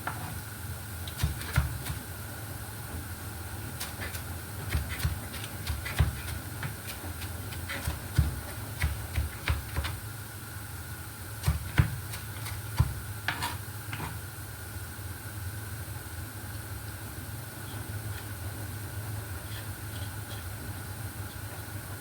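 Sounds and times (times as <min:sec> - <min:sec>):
knife chopping on cutting board: 0:01.1 - 0:02.0, 0:03.7 - 0:10.0, 0:11.4 - 0:14.2.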